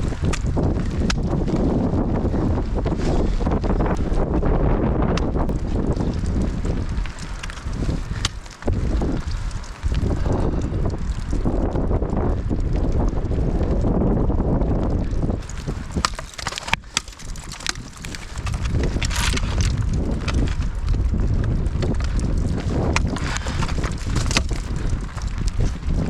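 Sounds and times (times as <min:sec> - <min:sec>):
wind buffeting microphone: 0:00.0 - 0:26.0
ice axe striking ice: 0:07.2 - 0:09.2, 0:15.4 - 0:20.6, 0:22.7 - 0:26.0.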